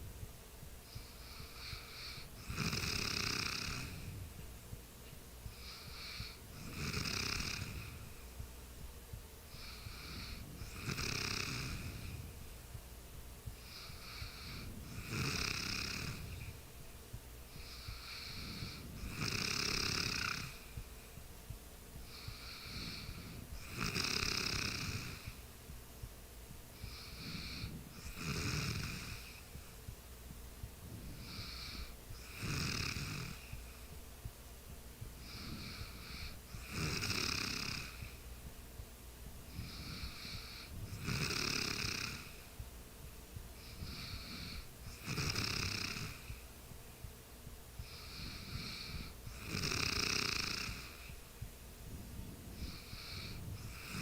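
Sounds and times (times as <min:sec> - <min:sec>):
soft breath: 0:00.8 - 0:02.6, 0:05.4 - 0:08.4, 0:09.5 - 0:12.5, 0:13.4 - 0:16.7, 0:17.5 - 0:19.3, 0:22.0 - 0:24.0, 0:26.8 - 0:30.0, 0:30.8 - 0:32.4, 0:35.0 - 0:36.8, 0:39.5 - 0:41.2, 0:43.6 - 0:45.0, 0:47.8 - 0:49.4, 0:50.7 - 0:54.0
person snoring: 0:00.9 - 0:04.2, 0:05.5 - 0:08.2, 0:09.5 - 0:12.3, 0:13.6 - 0:16.5, 0:17.5 - 0:20.9, 0:22.1 - 0:25.4, 0:26.8 - 0:29.4, 0:31.0 - 0:33.6, 0:35.2 - 0:38.2, 0:39.5 - 0:42.4, 0:43.6 - 0:46.4, 0:47.8 - 0:51.1, 0:52.5 - 0:54.0.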